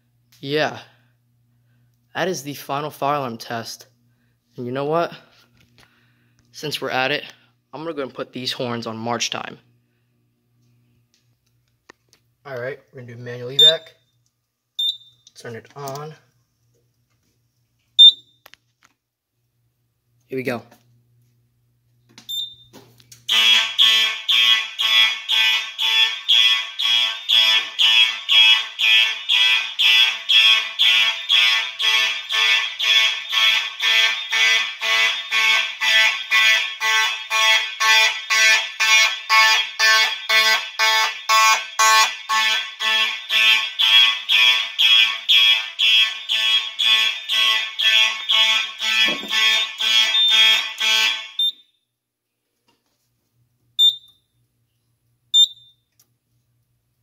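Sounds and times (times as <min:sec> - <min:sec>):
fire alarm horns blasting: 0:13.4 - 0:14.1, 0:14.8 - 0:15.3, 0:18.0 - 0:18.2, 0:22.3 - 0:22.7, 0:23.3 - 0:51.9, 0:53.8 - 0:54.3, 0:55.4 - 0:55.8.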